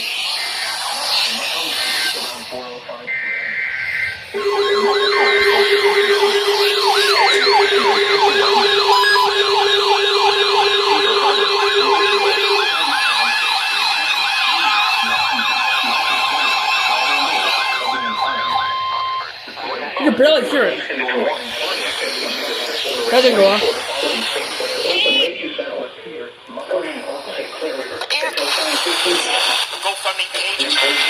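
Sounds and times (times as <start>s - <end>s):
rapidly wailing electronic siren: 0.0s - 20.0s, 20.7s - 25.3s
data burst squawks: 3.1s - 13.8s
steady alert tone: 4.4s - 13.6s.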